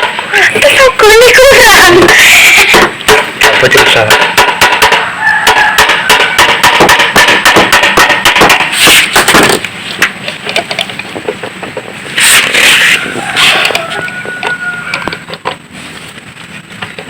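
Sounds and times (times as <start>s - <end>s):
short scraping bursts: 0.0s - 9.4s, 12.0s - 16.7s
hand tools clicking on metal: 2.6s - 15.6s.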